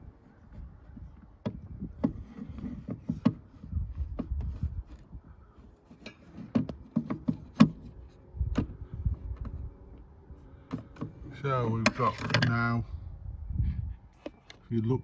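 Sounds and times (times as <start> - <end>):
knocks and clicks of handling: 0.5 - 12.6.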